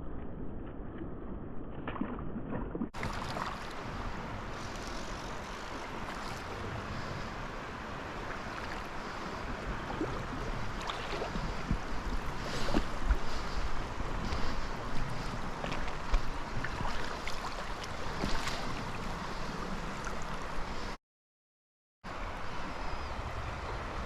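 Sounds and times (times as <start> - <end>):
flowing creek water: 3.0 - 21.0.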